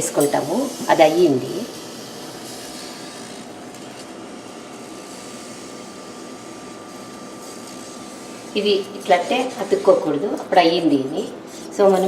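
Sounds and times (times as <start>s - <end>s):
steady hiss: 0.0s - 10.1s.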